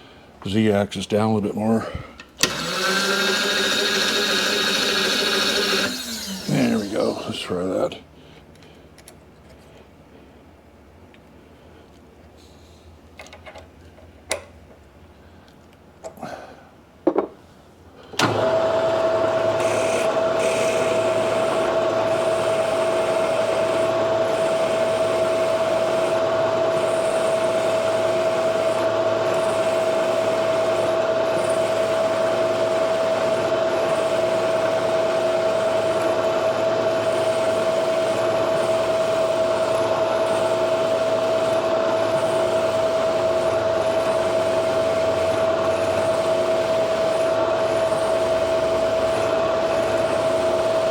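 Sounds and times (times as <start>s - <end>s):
drill boring into steel: 2.4s - 7.4s, 19.4s - 50.9s
milling machine whining: 2.4s - 7.6s, 18.2s - 50.9s.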